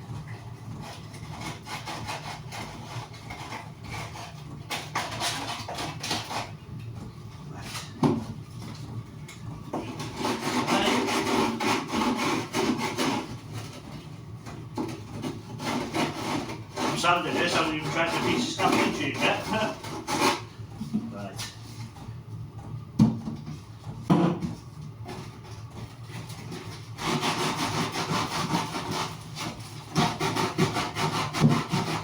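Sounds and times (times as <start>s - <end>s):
sandpaper rubbing on wood: 9.9s - 13.3s, 15.6s - 20.4s, 26.5s - 32.0s.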